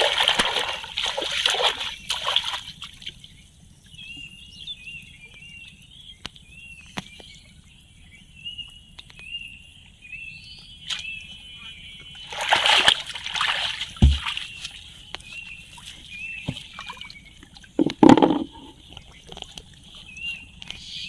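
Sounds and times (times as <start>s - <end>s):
water splashing and sloshing: 0.0s - 3.5s, 12.2s - 20.8s.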